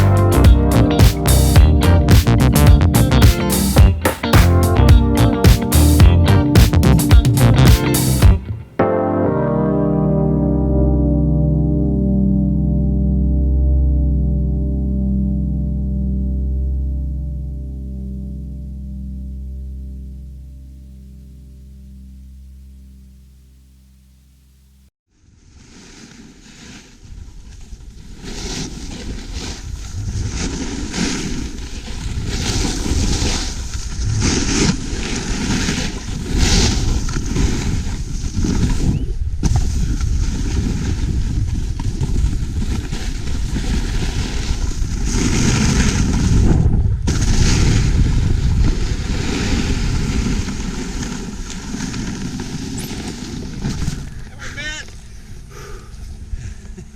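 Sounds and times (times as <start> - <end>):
wind buffeting microphone: 31.5 - 54.3.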